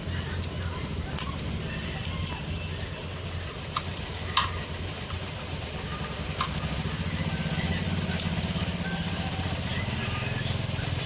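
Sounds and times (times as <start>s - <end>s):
steady low hum: 0.0s - 11.0s
sharp clicks and ticks: 1.2s - 2.5s, 3.6s - 5.3s, 6.3s - 7.1s, 7.9s - 9.8s.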